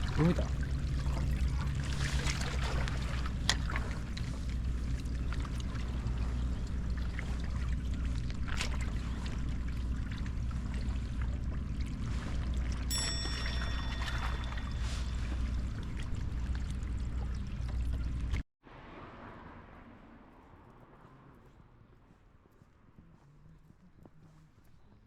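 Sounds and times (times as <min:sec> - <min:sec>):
water sloshing and trickling: 0:00.0 - 0:20.5
steady low rumble: 0:00.0 - 0:25.0
short high-pitched tone: 0:12.9 - 0:15.8.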